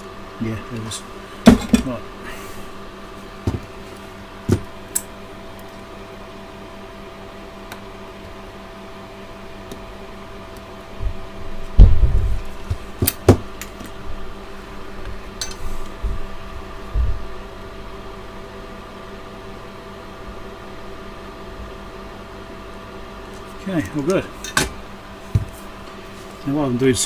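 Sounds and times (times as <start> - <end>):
steady background hum: 0.0 - 27.0
tools knocking on a workbench: 1.5 - 1.9, 3.4 - 3.7, 4.5 - 4.7.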